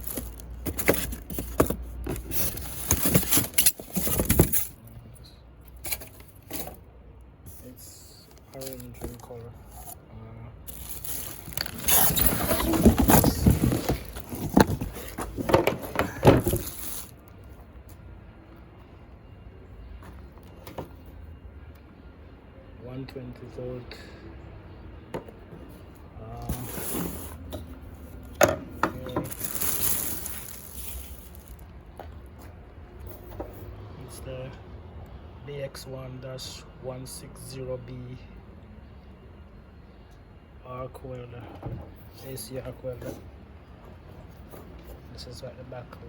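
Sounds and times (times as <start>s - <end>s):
cardboard rustling and scraping: 0.0s - 4.6s, 10.7s - 17.2s, 26.5s - 27.5s, 29.2s - 31.6s.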